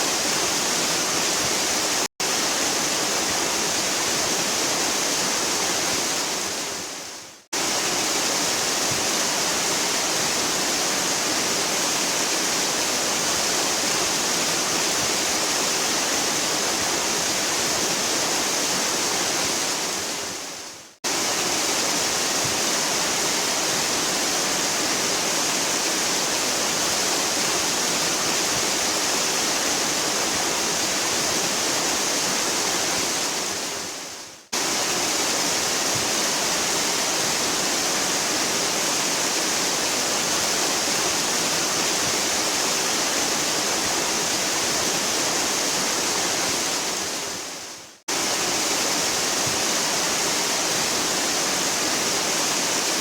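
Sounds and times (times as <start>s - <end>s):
waterfall roaring: 34.6s - 47.5s.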